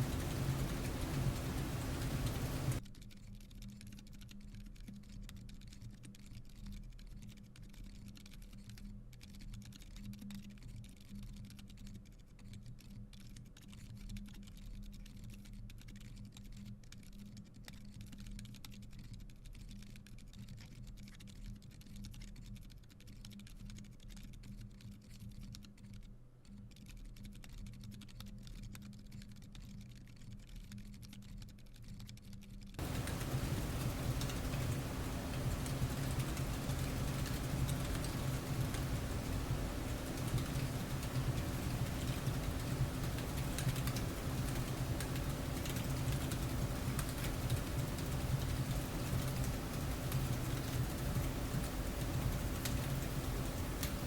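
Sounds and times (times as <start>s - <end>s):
faint low hum: 0.0s - 2.8s, 32.8s - 54.0s
soft mechanical keyboard typing: 0.0s - 2.8s, 3.6s - 54.0s.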